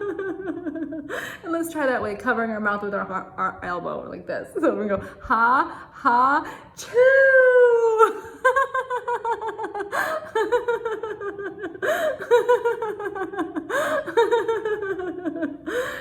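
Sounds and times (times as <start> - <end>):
woman laughing: 0.0 - 1.3, 7.6 - 16.0.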